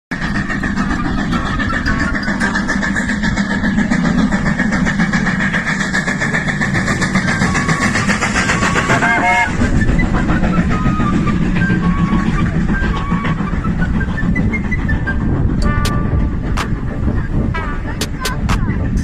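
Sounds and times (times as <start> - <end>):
train rumble and clatter: 0.1 - 19.0
train whistle: 0.9 - 2.6, 7.2 - 16.4.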